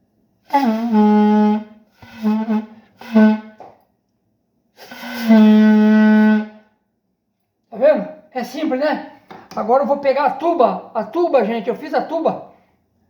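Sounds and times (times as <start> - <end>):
homemade pvc pipe saxophone notes: 0.4 - 3.8, 4.8 - 6.8.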